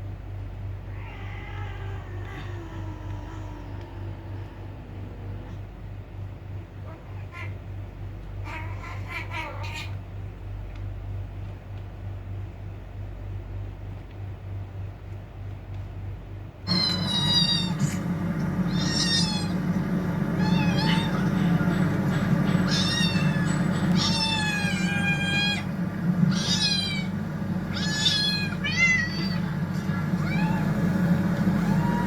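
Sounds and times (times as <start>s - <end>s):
steady low hum: 0.0s - 32.0s
cat meowing: 0.9s - 4.6s, 8.4s - 10.0s, 16.7s - 18.0s, 18.7s - 19.6s, 22.7s - 25.7s, 27.7s - 30.9s, 31.5s - 32.0s.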